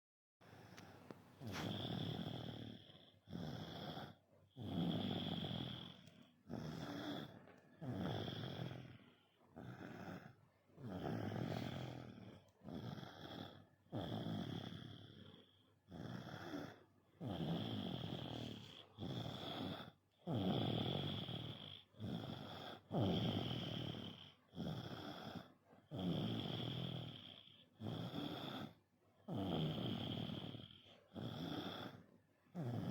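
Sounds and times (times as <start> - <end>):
person snoring heavily: 1.4 - 5.9, 9.6 - 15.2, 16.0 - 32.0.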